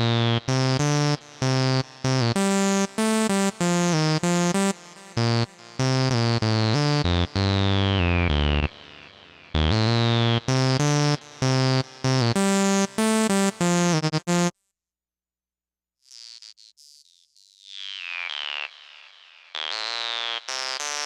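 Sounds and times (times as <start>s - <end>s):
low synth bass: 0.0s - 2.4s, 5.3s - 8.8s, 9.6s - 14.5s
stabbed synth chords: 0.0s - 14.5s.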